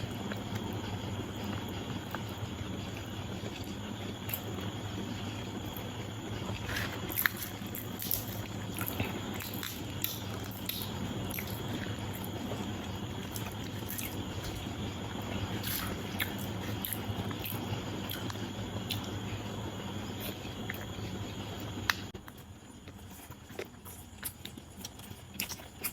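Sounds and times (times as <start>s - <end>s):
steady low hum: 0.0s - 25.9s
person chewing food: 5.6s - 19.4s, 20.1s - 25.9s.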